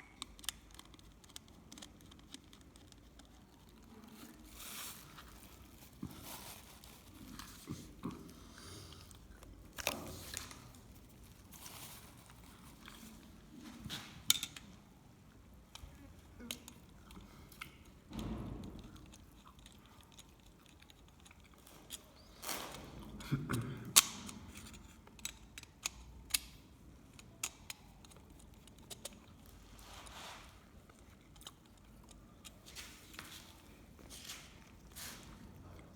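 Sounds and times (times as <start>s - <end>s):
hands handling small parts: 8.9s - 22.8s.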